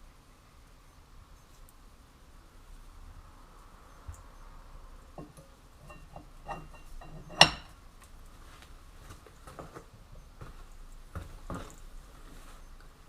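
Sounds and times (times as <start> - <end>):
metal tools clinking and knocking: 5.2 - 7.8.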